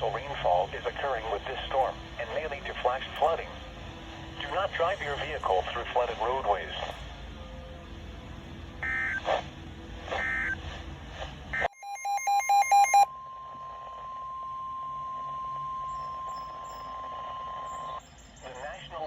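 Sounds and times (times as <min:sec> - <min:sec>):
steady single-pitch warning tone: 0:08.8 - 0:09.3, 0:10.1 - 0:10.7, 0:11.5 - 0:18.2
short electronic squawks: 0:08.8 - 0:09.4, 0:10.1 - 0:10.6
rapid pulsing data tones: 0:08.8 - 0:19.0.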